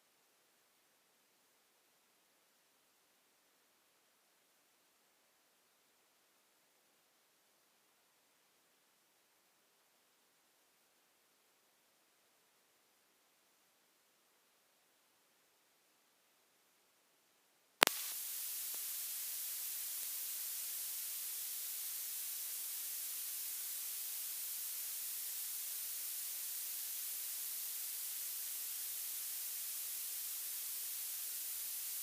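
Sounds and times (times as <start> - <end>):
high-pitched static hiss: 0.0 - 32.0
sharp click: 17.8 - 18.8.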